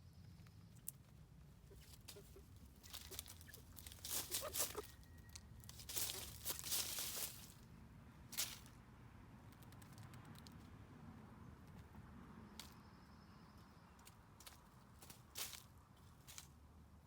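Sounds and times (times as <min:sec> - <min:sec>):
dry rustling and crunching: 0:00.7 - 0:08.8, 0:14.0 - 0:17.0.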